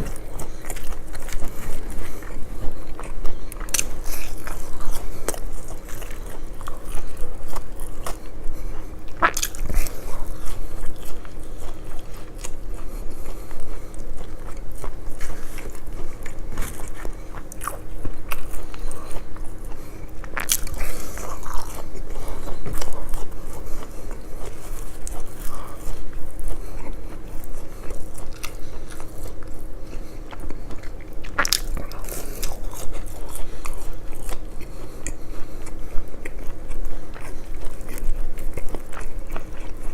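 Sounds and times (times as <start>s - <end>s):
wet chewing: 0.0s - 39.9s
crunchy bites: 9.1s - 12.6s, 20.2s - 39.9s.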